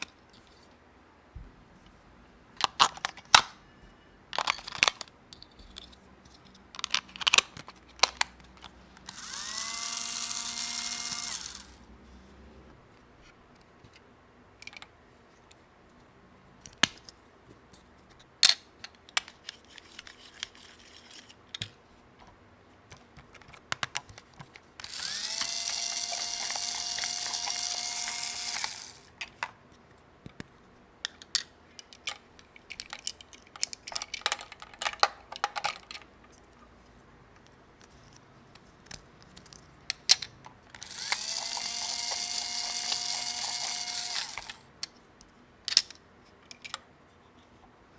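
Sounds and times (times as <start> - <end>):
plastic toy parts clicking: 2.6 - 3.6, 4.3 - 11.8, 14.6 - 14.9, 18.4 - 21.8, 22.9 - 29.6, 30.2 - 36.6, 37.4 - 46.8
small electric motor whirring: 9.0 - 11.9, 24.8 - 29.1, 40.8 - 44.6.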